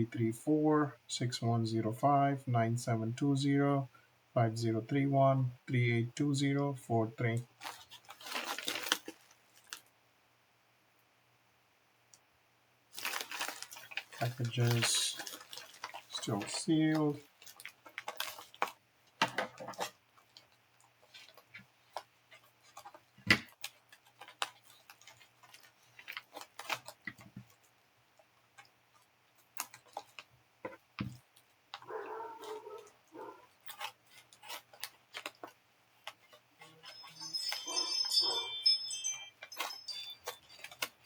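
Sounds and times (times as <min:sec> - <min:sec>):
packing material rustling: 0:07.5 - 0:09.9, 0:12.9 - 0:41.0.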